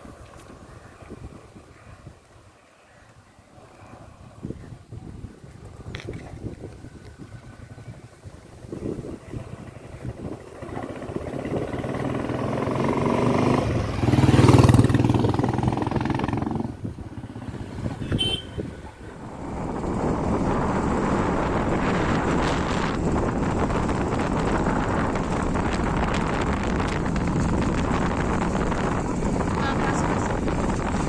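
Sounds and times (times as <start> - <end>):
motorcycle engine running: 7.3 - 31.0.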